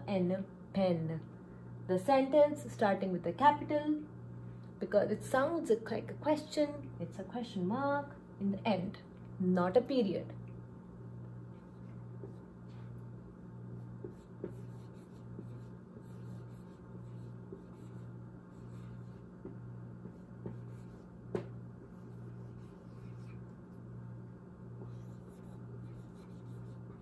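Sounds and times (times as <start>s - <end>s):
steady low hum: 0.0s - 27.0s
pen scratching and tapping: 14.0s - 23.4s.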